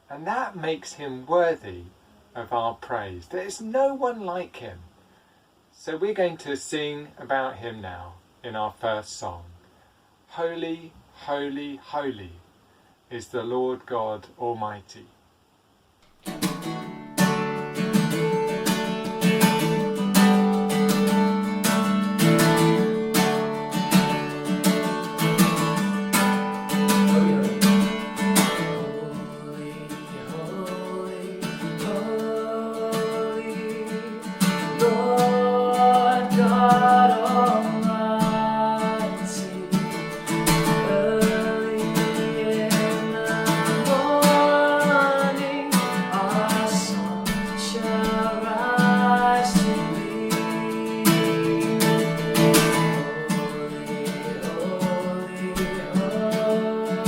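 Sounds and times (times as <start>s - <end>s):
acoustic guitar strumming: 16.0s - 57.0s.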